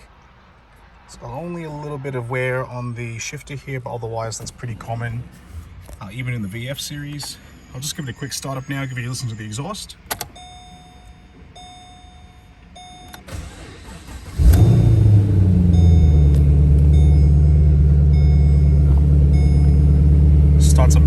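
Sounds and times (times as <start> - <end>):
car engine starting and idling: 0.5 - 21.0
warning chimes beeping: 6.0 - 21.0.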